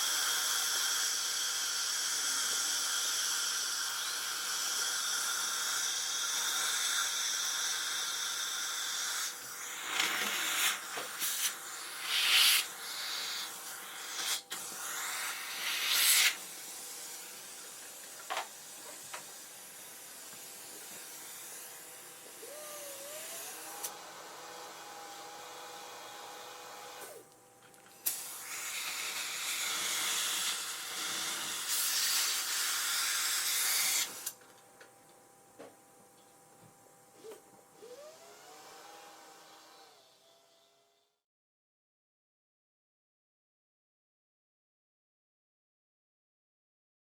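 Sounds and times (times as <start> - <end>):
dentist's drill whining: 0.0 - 19.3, 20.4 - 27.3, 28.0 - 34.4, 37.2 - 41.2
loud hissing bursts: 0.0 - 21.9, 28.0 - 34.3.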